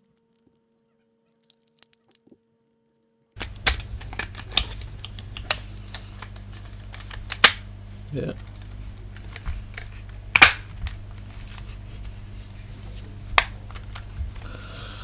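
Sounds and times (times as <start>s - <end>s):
low steady hum: 3.4s - 15.0s
plastic controller parts clicking: 3.4s - 15.0s.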